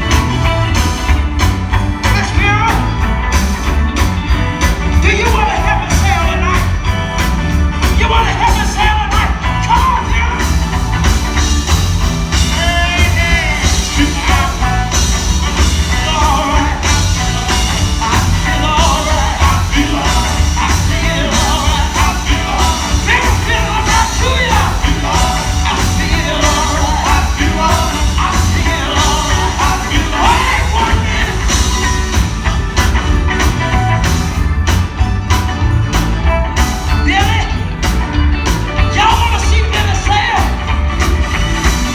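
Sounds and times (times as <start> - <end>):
steady bass: 0.0 - 41.9
gospel vocals over a band: 4.9 - 7.2, 7.8 - 34.2.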